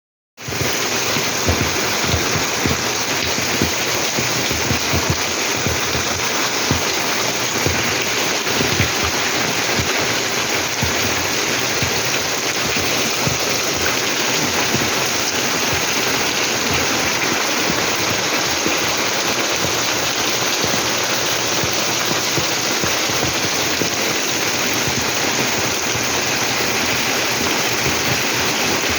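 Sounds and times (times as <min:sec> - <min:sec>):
rain falling: 0:00.4 - 0:28.9
raindrops hitting close by: 0:00.4 - 0:28.9.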